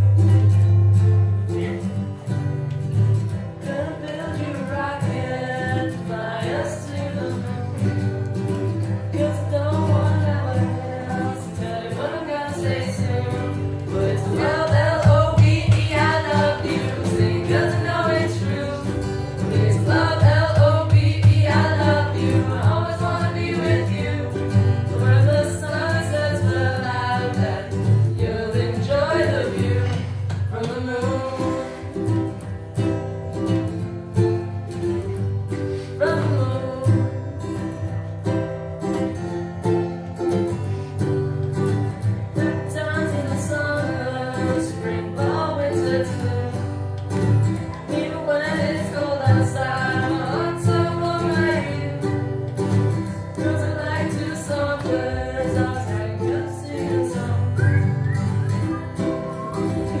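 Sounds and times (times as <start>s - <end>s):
plucked acoustic guitar: 0.0s - 60.0s
person singing: 9.1s - 32.3s, 35.8s - 37.6s, 53.4s - 60.0s.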